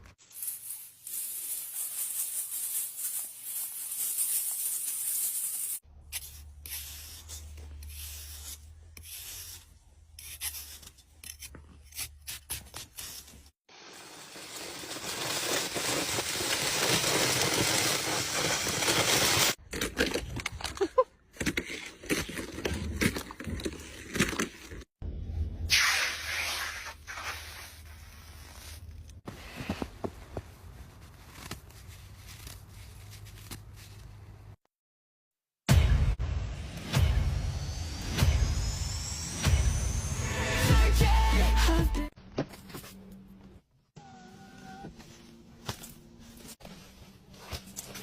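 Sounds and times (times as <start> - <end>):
snow and ice scraping: 0.0 - 20.3, 25.7 - 34.2.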